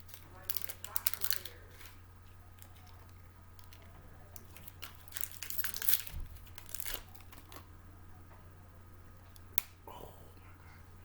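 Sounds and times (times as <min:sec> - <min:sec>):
snack packaging crinkling: 0:00.0 - 0:07.7.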